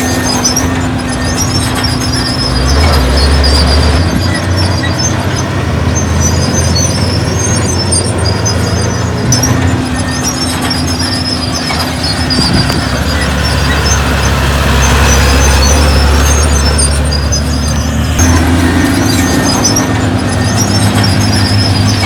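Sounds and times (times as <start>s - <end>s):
diesel machinery engine rumble: 0.0s - 22.0s
high squealing: 0.0s - 22.0s.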